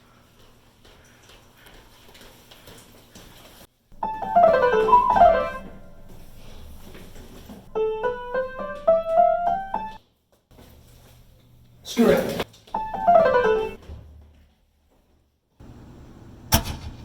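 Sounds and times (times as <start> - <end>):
piano notes: 3.9 - 10.0, 12.7 - 13.8.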